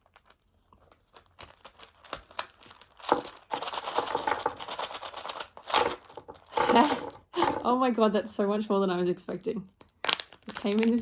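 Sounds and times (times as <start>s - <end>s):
plastic packaging crinkling: 0.0s - 6.9s, 9.8s - 11.0s.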